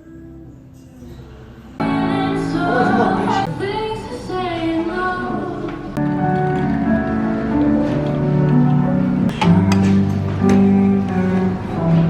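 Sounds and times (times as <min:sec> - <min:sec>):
background music: 0:00.0 - 0:12.0.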